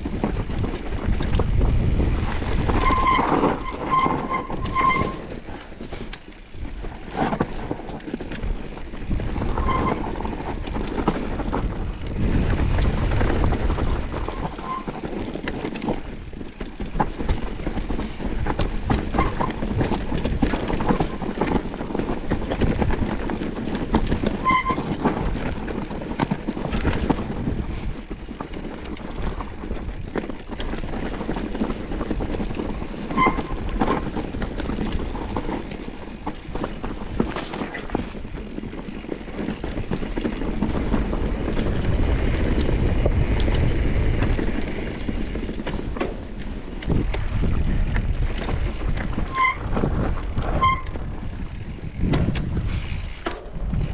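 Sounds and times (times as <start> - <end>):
bike rattling over stones: 0.0 - 53.9
bike tyres on rocky trail: 0.0 - 53.9
short high squeaks: 2.8 - 5.4, 9.5 - 10.6, 14.1 - 15.1, 24.4 - 25.4, 33.0 - 34.0, 49.0 - 51.1.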